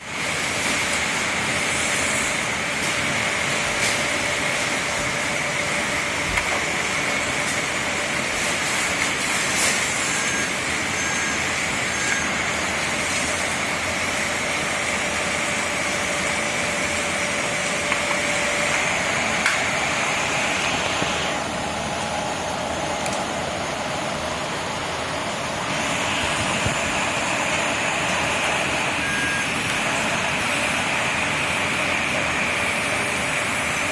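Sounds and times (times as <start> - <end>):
small electric motors whining: 0.3 - 22.1
short beeps: 9.9 - 12.4, 28.9 - 29.8.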